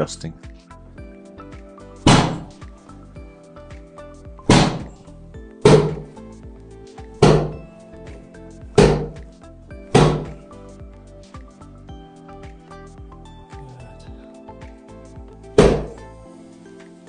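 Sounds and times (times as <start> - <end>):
background music: 0.0 - 17.0
heavy thuds on a table: 2.1 - 2.5, 4.5 - 5.0, 5.7 - 6.1, 7.2 - 7.7, 8.8 - 9.2, 10.0 - 10.4, 15.6 - 16.0.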